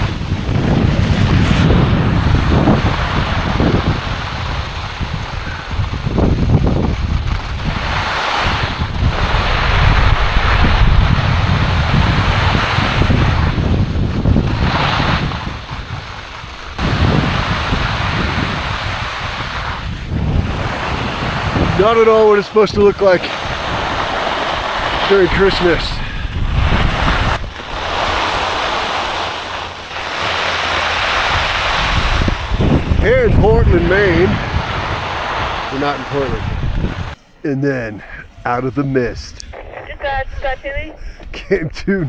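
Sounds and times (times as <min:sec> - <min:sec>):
wind buffeting microphone: 0:00.0 - 0:37.2
skis hissing over icy snow: 0:07.7 - 0:10.8, 0:14.5 - 0:20.0, 0:20.6 - 0:33.2, 0:33.8 - 0:36.4.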